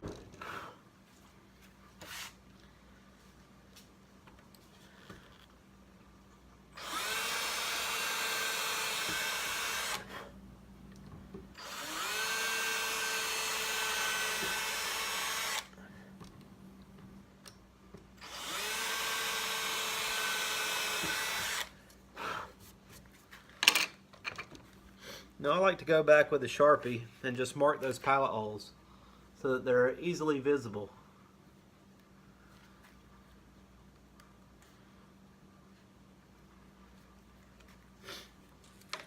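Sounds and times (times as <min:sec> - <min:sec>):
power drill drilling into wood: 0:06.8 - 0:10.1, 0:11.6 - 0:15.7, 0:18.2 - 0:21.7.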